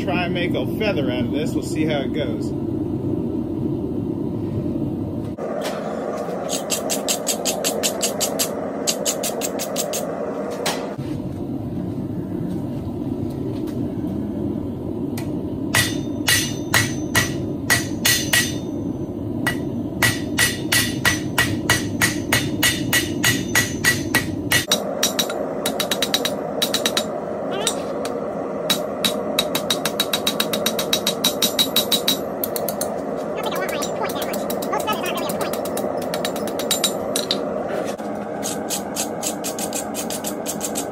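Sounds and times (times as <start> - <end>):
steady low rushing noise: 0.0 - 29.8
hammer striking metal on anvil: 15.7 - 18.8, 19.4 - 27.8, 28.7 - 32.7, 35.5 - 37.5.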